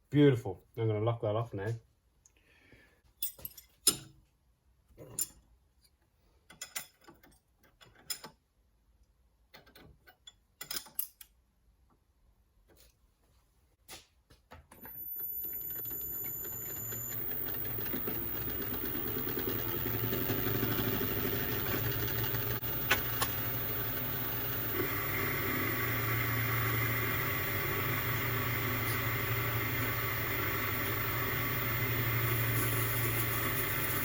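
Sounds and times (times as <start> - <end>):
clicks: 14.7 - 32.2
milling machine spindle motor: 14.9 - 34.0
high steady whine: 15.2 - 34.0
cutter working steel: 15.4 - 34.0.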